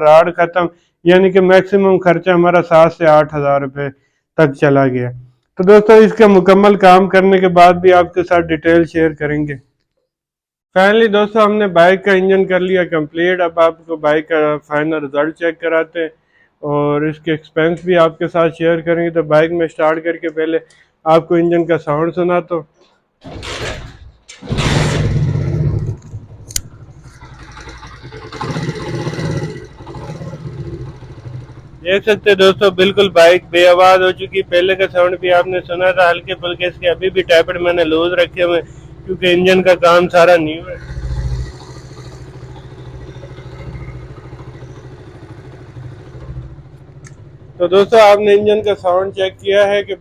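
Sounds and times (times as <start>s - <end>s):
motorcycle engine starting and revving: 23.3s - 50.0s
sharp click: 26.0s - 26.8s.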